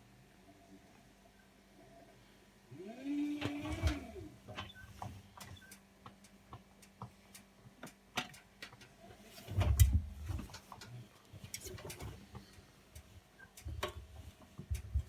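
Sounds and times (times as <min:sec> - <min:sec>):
washing machine low rumble: 0:02.8 - 0:08.0, 0:08.8 - 0:15.0.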